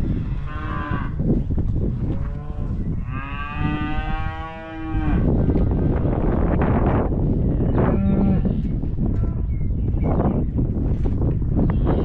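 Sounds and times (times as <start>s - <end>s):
cattle mooing: 0.0s - 1.2s, 2.1s - 6.2s.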